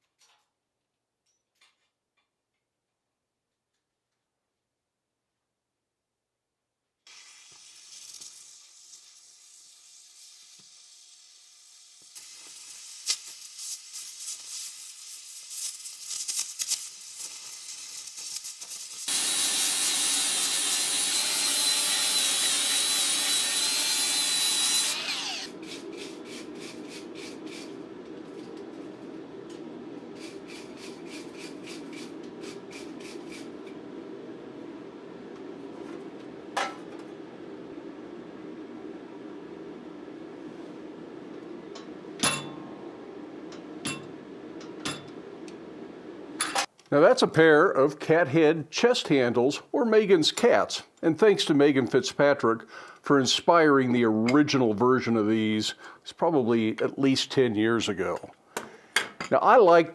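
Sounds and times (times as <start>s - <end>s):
power tool running: 19.1s - 46.7s.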